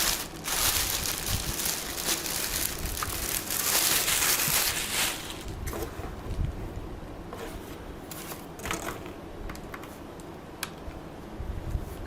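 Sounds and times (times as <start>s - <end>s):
packaging rustling and crinkling: 0.0s - 5.9s.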